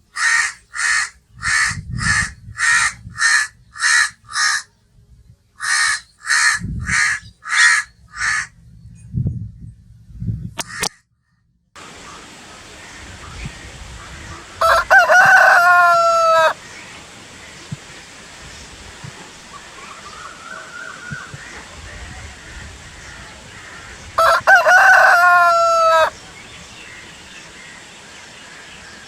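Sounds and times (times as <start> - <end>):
faint steady hiss: 11.8 - 29.0
rooster crowing: 14.6 - 16.6, 24.2 - 26.2.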